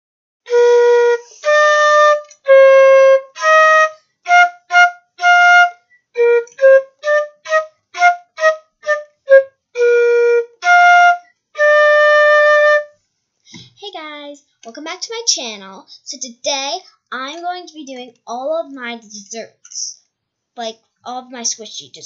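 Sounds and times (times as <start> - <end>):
flute-like melody: 0.4 - 13.0.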